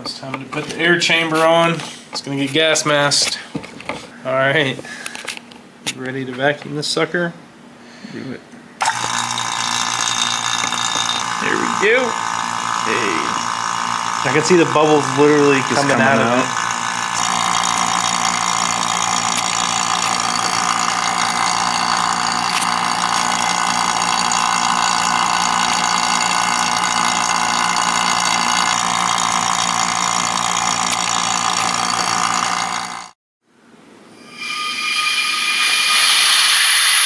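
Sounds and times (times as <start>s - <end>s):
vacuum pump humming: 8.8s - 33.2s.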